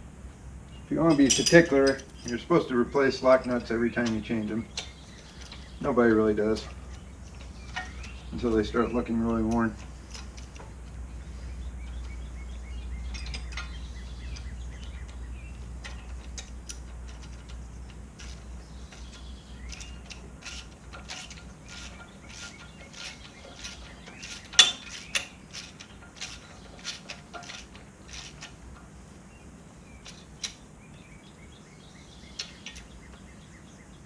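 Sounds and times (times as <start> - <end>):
sharp metal click: 1.1 - 5.8, 13.0 - 28.8, 30.0 - 30.6
ratchet wrench clicking: 13.0 - 28.8.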